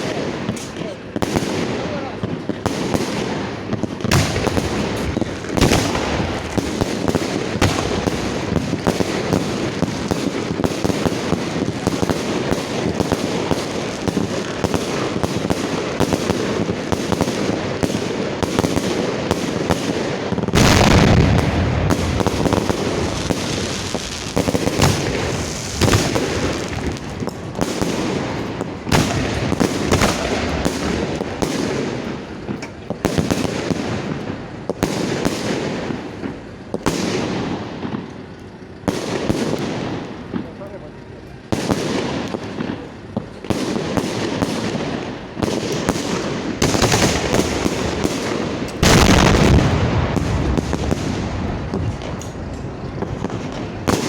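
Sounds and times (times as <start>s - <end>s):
fireworks launches and bursts: 0.0s - 54.0s.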